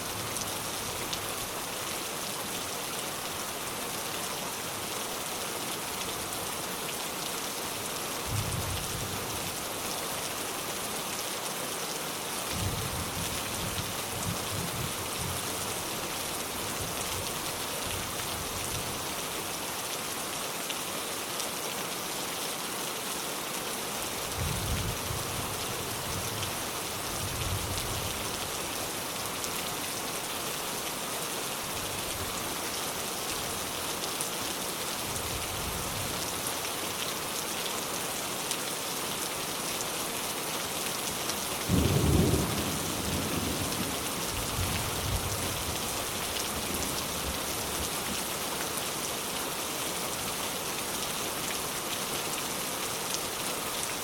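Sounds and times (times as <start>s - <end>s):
steady rain: 0.0s - 54.0s.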